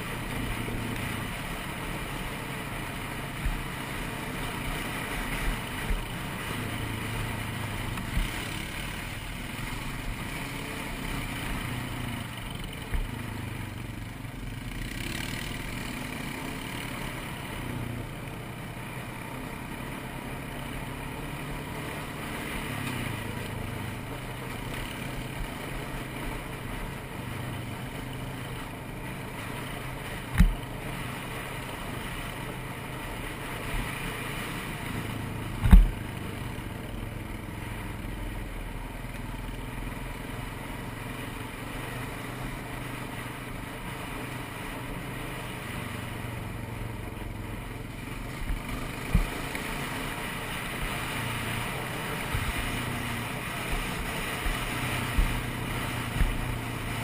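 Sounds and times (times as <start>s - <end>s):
atv engine running: 0.0s - 57.0s
sharp low thumps: 35.6s - 36.1s.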